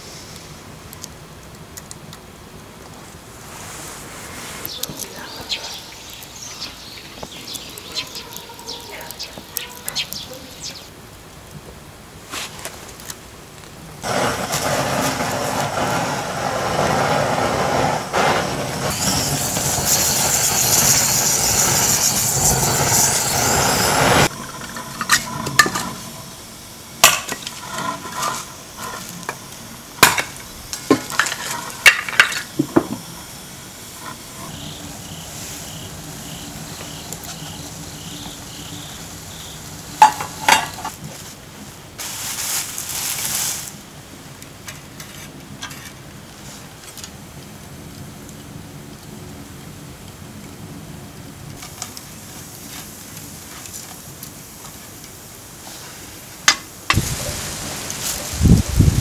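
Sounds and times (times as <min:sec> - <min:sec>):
food sizzling on a stove: 0:03.4 - 0:10.9, 0:14.0 - 0:43.9, 0:51.6 - 0:59.0
utensils clinking against pots: 0:40.0 - 0:41.0.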